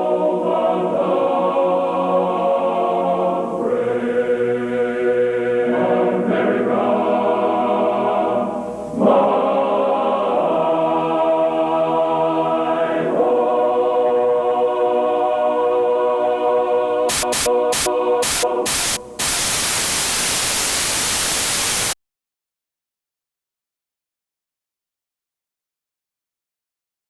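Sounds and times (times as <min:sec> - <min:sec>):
choir singing slow chords: 0:00.0 - 0:19.4.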